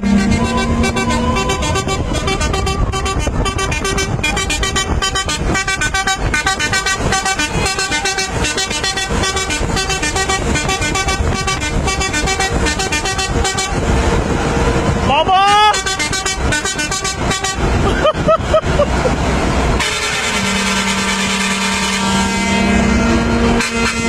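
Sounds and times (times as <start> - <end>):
musical air horns playing a tune: 0.0 - 13.8, 15.7 - 17.8, 19.8 - 24.0
low rumble: 0.0 - 15.1.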